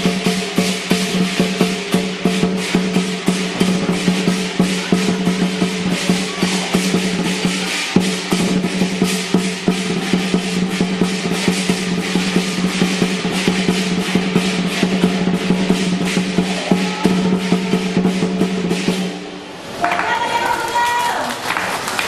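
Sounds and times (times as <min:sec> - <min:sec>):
big drum beaten fast: 0:00.0 - 0:19.6
cymbals clashing: 0:00.0 - 0:20.2.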